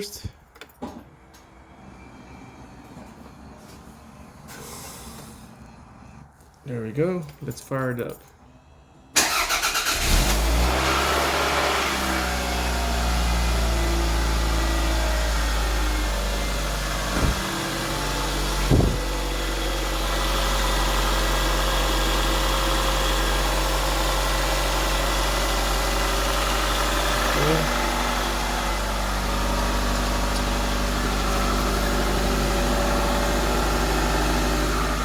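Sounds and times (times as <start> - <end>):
car engine starting and idling: 0.0 - 6.7, 8.3 - 35.0
brief thumps: 17.1 - 17.5, 18.6 - 19.1.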